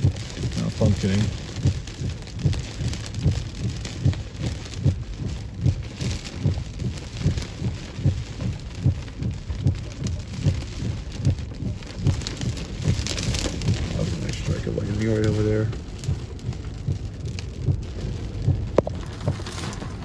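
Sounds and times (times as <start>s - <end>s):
heavy rain: 0.0s - 20.0s
low thumping: 0.0s - 20.0s
strong wind: 15.6s - 20.0s.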